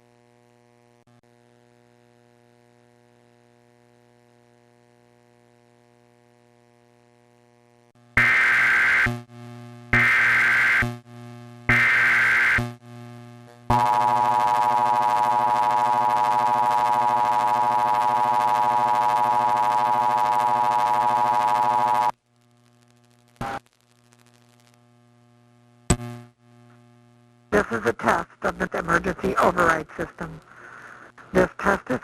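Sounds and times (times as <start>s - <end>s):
low hum: 13.2s - 27.9s.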